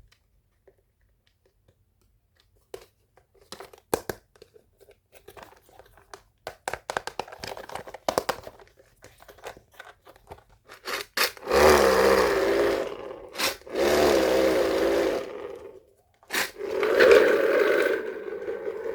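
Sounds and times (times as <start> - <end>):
small clicks and crinkles: 0.0 - 11.2
loud scraping rub: 11.3 - 18.9.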